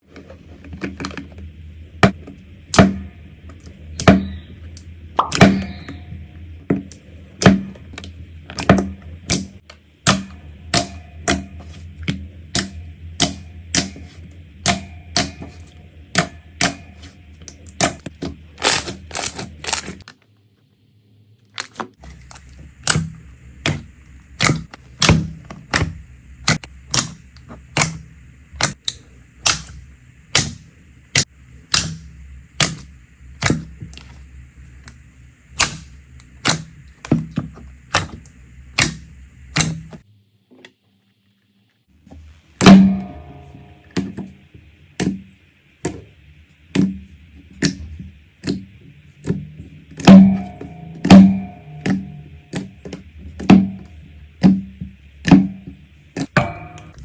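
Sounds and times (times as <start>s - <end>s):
slime clicking pops: 35.6s - 35.8s.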